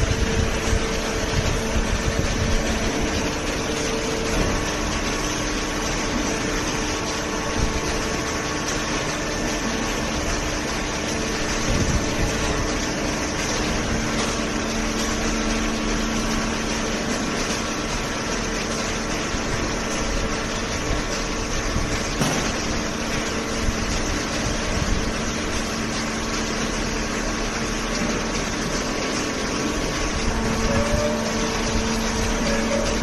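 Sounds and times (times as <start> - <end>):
hydraulic pump humming: 0.0 - 33.0.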